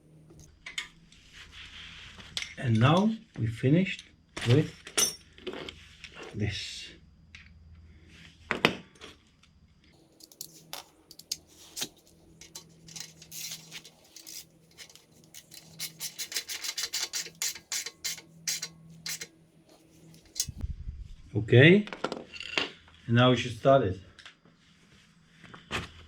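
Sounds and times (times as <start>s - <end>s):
hand tools clicking and scraping: 10.0s - 20.6s.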